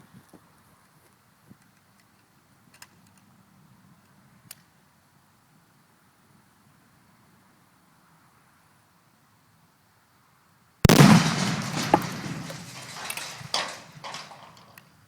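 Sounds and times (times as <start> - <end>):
explosion blast with rumble: 10.9 - 14.4
small cracks: 10.9 - 14.9.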